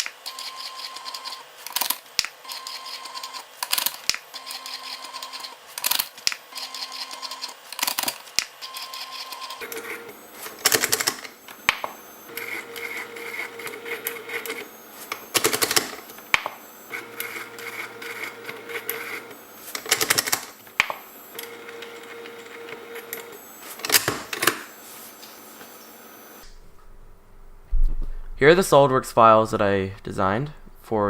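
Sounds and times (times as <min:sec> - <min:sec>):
stepper motor whining: 0:08.6 - 0:26.7.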